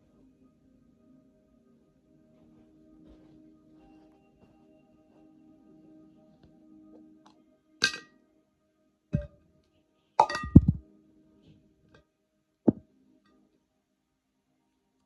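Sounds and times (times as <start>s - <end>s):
faint sustained tones: 0.0s - 11.4s
knocks and clinks: 10.2s - 10.8s.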